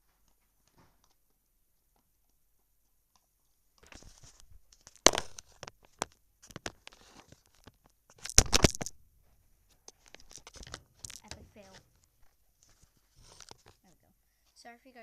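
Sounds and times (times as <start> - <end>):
sticky slime crackling: 3.8 - 8.9, 9.8 - 13.9.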